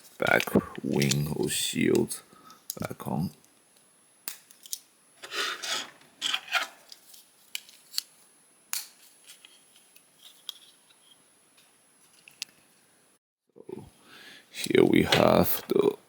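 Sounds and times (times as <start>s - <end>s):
plastic parts rubbing scrapes: 5.2s - 7.2s.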